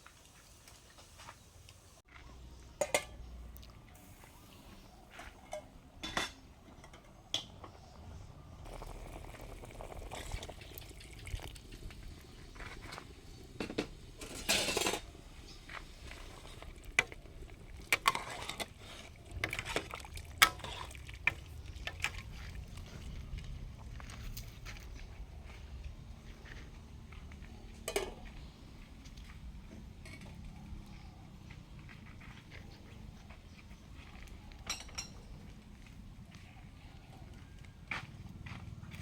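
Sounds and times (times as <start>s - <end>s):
metal utensil clinking on pot: 2.8s - 3.3s, 13.6s - 15.1s
liquid sloshing: 16.0s - 22.9s.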